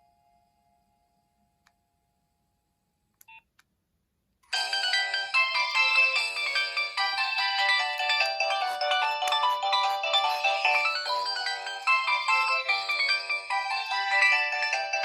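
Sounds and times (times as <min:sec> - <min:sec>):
electronic ringtone tune: 0:04.5 - 0:15.0
ringtone note: 0:04.5 - 0:15.0.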